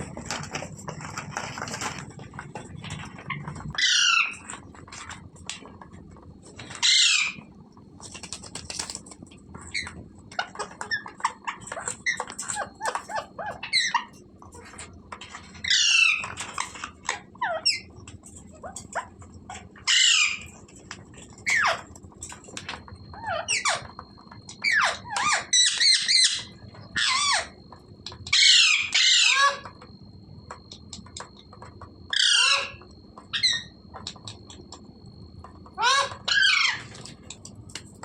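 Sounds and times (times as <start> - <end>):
parrot squawking: 3.7 - 4.5, 6.8 - 7.4, 19.8 - 20.5, 28.3 - 29.7, 32.1 - 33.7, 35.8 - 37.0.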